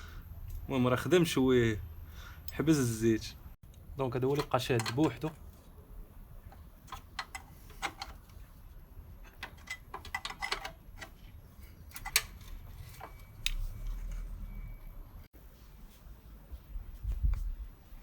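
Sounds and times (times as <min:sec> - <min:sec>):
metal tool clicks and taps: 0:04.4 - 0:05.4.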